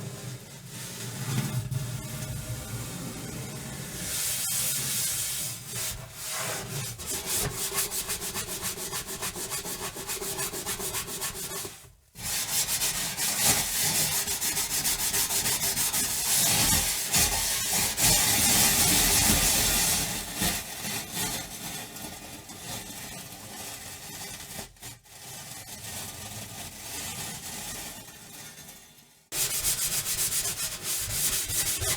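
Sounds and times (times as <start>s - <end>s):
scrubbing an oven: 0.0s - 19.8s, 29.3s - 31.9s.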